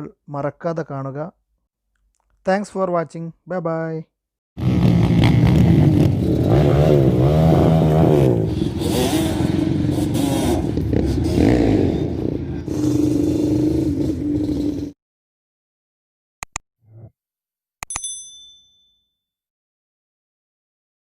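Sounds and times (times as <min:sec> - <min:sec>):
engine revving: 0:04.6 - 0:15.0.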